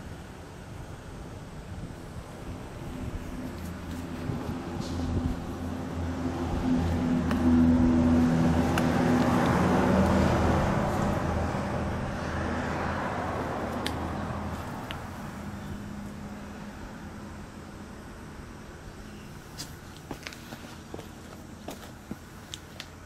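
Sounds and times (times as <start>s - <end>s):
vehicle passing by: 2.3s - 17.4s.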